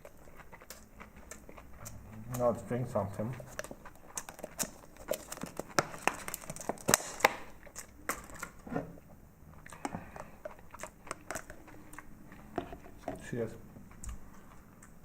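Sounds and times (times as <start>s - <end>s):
packaging crinkling and rustling: 3.4s - 8.7s.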